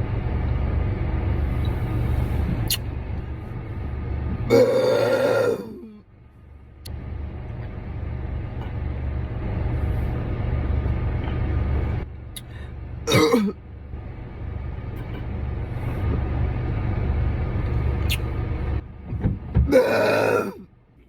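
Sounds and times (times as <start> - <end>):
steady low rumble: 0.0 - 19.6
short burp: 4.5 - 5.9, 13.1 - 13.6, 19.7 - 20.6.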